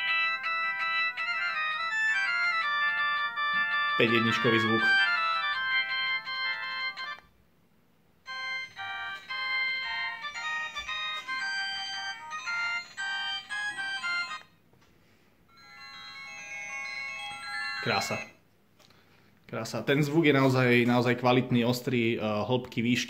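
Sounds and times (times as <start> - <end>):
polyphonic ringtone melodies: 0.0 - 7.3, 8.3 - 14.5, 15.5 - 18.4.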